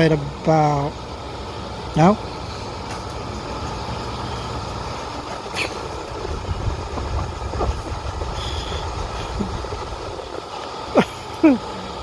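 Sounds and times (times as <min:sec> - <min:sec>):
cooling fan running: 0:00.0 - 0:12.0.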